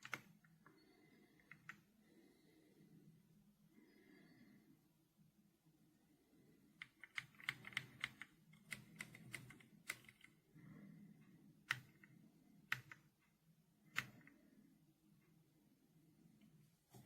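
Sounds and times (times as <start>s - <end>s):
mechanical keyboard typing: 0.0s - 0.4s, 6.8s - 10.4s, 12.7s - 13.1s.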